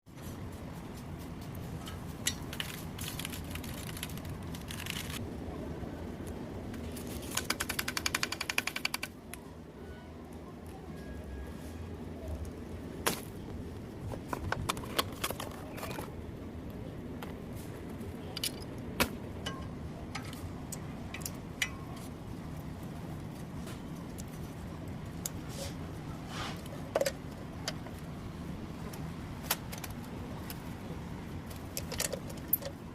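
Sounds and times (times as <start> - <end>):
steady low hum: 0.1 - 32.9
clicks and knocks of handiwork: 6.8 - 9.4
fast run of sharp clicks: 7.2 - 9.2.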